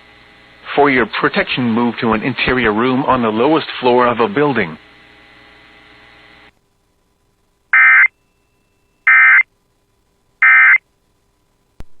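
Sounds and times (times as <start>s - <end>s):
buzzing digital data tones: 7.8s - 9.5s, 10.4s - 10.8s.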